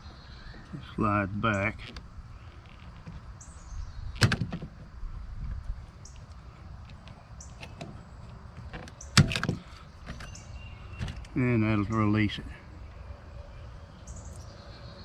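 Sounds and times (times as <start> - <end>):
faint bird chirps: 9.0 - 15.0.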